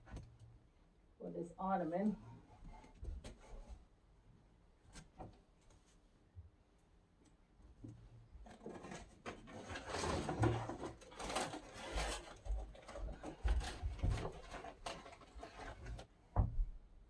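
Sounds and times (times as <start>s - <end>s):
furniture rubbing and scraping: 8.7s - 16.1s
low bumps and knocks: 16.3s - 16.8s.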